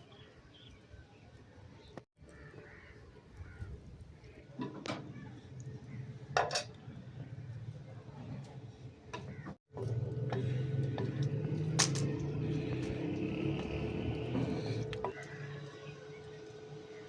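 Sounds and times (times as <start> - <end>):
kitchenware clinking: 6.4 - 6.8.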